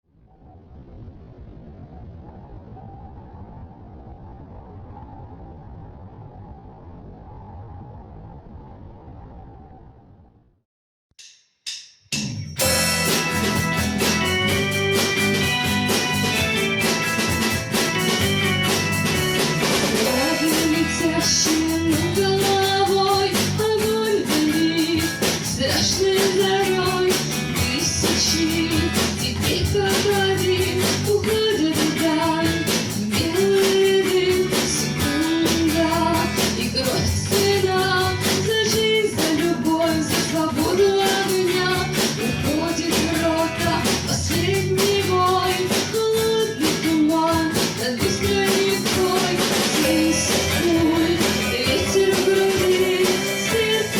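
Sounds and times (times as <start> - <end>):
drum kit: 11.2 - 53.9
electric guitar: 12.6 - 53.9.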